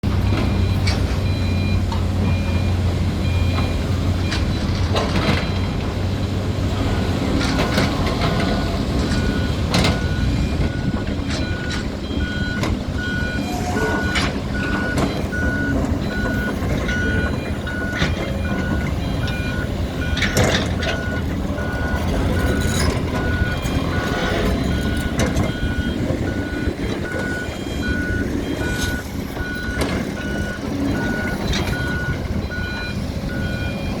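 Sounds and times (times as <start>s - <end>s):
diesel engine running: 0.0s - 34.0s
warning alarm beeping: 7.5s - 34.0s.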